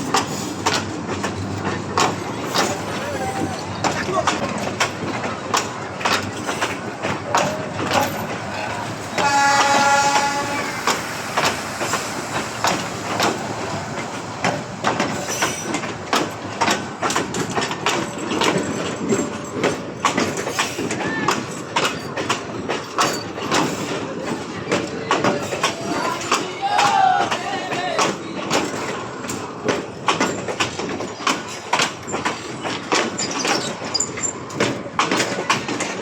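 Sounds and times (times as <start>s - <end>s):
train clacking: 0.0s - 36.0s
train horn: 9.1s - 11.1s.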